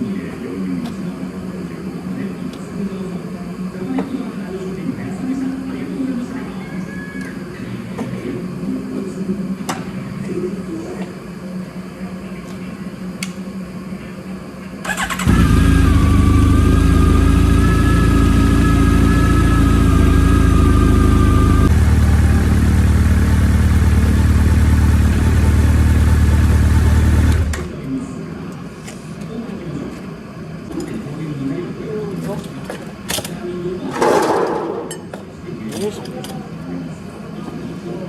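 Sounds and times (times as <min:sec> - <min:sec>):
high steady whine: 0:12.8 - 0:28.9
motorcycle engine starting and running: 0:14.8 - 0:27.9.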